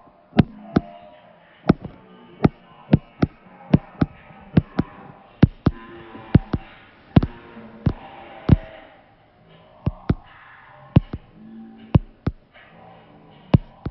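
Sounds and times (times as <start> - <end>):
short sharp taps: 0.4 - 0.9, 1.7 - 5.8, 6.4 - 8.7, 9.9 - 10.3, 11.0 - 11.3, 13.6 - 13.9.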